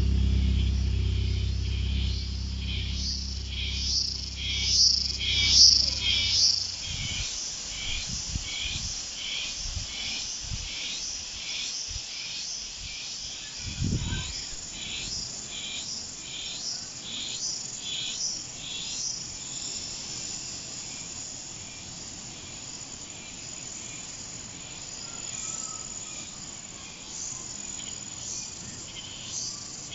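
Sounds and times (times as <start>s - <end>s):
low thumps: 0.0s - 8.2s
high-pitched insect drone: 0.0s - 9.5s
insects chirping: 0.0s - 29.9s.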